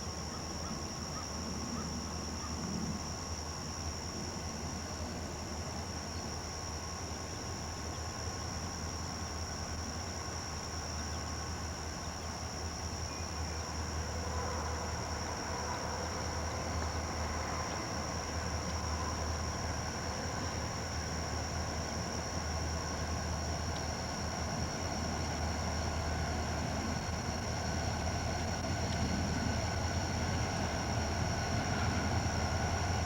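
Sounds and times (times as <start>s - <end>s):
crickets trilling: 0.0s - 33.0s.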